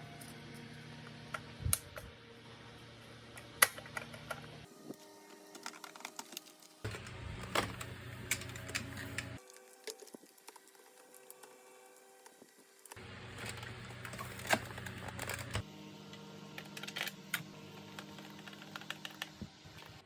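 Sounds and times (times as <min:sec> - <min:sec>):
plastic parts and tools clicking: 0:05.4 - 0:11.5, 0:13.4 - 0:15.6.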